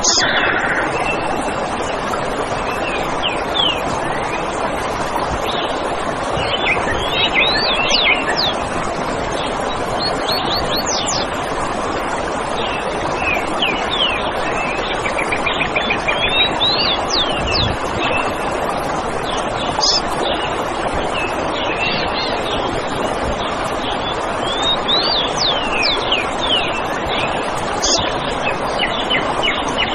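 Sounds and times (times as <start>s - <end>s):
birds chirping: 0.0s - 1.3s, 19.7s - 20.1s, 27.8s - 28.0s
bird trill: 19.8s - 20.0s, 27.8s - 28.0s.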